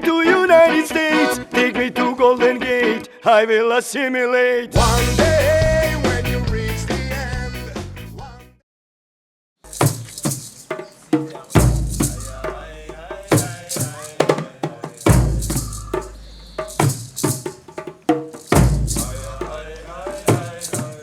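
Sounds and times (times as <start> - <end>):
percussive clicks and rattles: 9.7 - 21.0.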